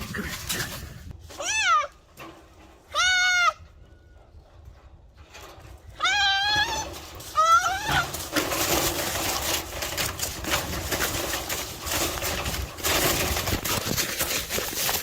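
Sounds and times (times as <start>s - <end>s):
rustling and scuffling: 0.0s - 3.0s, 3.6s - 15.0s.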